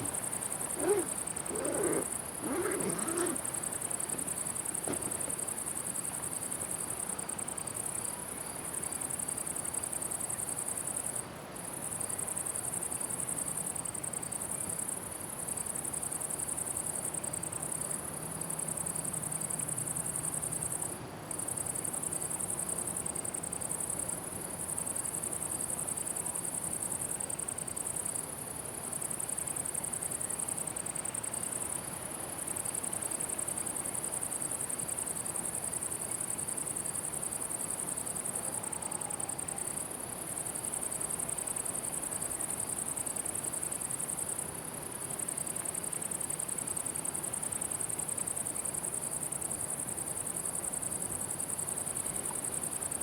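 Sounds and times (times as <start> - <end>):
crickets chirring: 0.0 - 9.5, 24.6 - 53.0.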